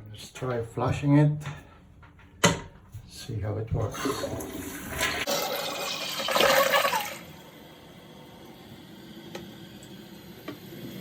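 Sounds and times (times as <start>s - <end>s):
toilet flushing: 3.8s - 8.8s
toilet tank refilling hiss: 3.9s - 11.0s.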